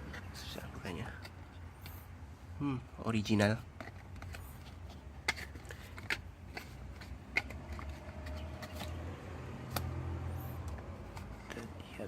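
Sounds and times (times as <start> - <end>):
packaging clicks and scrapes: 3.6 - 9.9.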